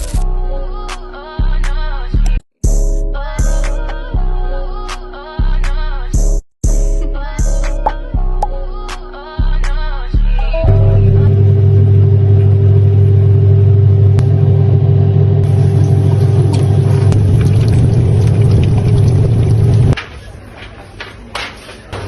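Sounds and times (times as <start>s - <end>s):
motor vehicle running rumble: 10.7s - 20.0s.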